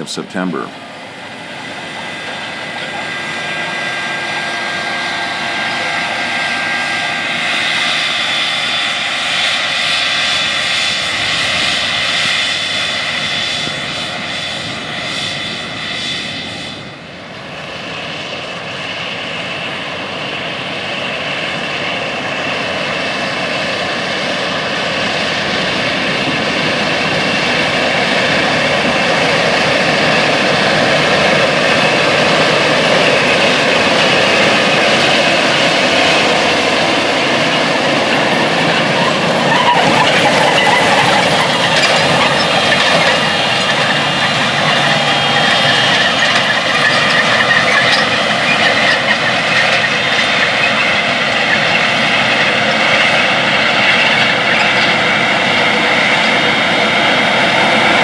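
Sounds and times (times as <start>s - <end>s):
heavy diesel engines under load: 0.0s - 58.0s
high steady whine: 25.1s - 50.6s.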